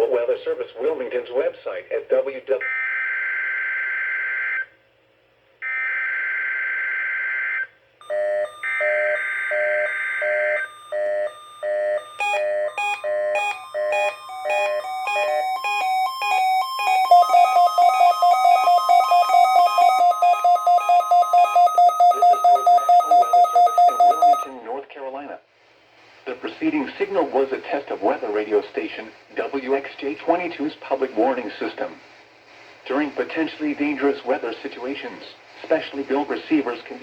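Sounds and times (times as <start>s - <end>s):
screechy digital data bursts: 11.8s - 24.4s
weather radio alert beeps: 12.0s - 24.6s.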